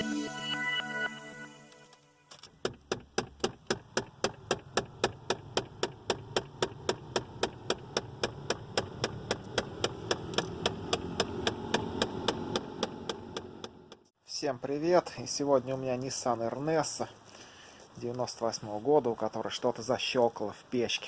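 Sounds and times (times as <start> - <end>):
rapid clicking behind dashboard: 2.5 - 14.1.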